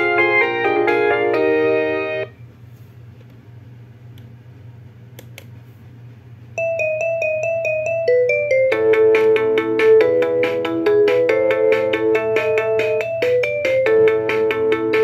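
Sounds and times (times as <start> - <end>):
polyphonic ringtone melody: 0.0 - 2.3, 6.6 - 15.0
low steady hum: 0.0 - 15.0.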